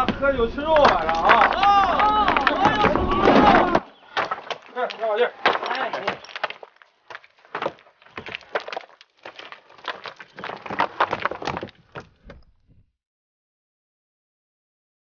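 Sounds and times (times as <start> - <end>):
hand tools striking rock: 0.0 - 12.4.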